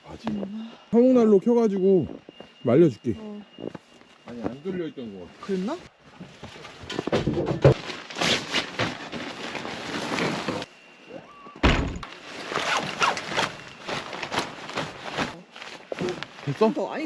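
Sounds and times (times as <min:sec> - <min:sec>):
quick crunching and rustling: 0:12.0 - 0:16.9.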